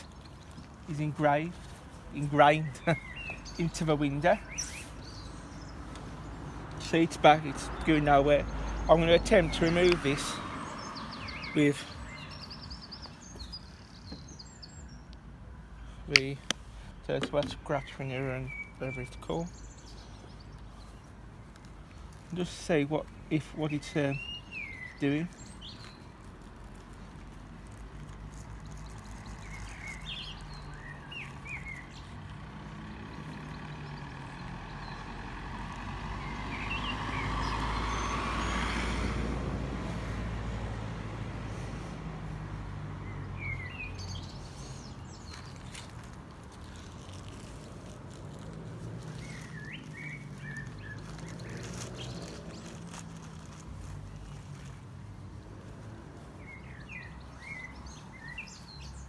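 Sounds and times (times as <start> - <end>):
birds chirping: 0.0 - 59.0
vehicle passing by: 0.9 - 12.8, 32.0 - 45.4, 46.0 - 58.1.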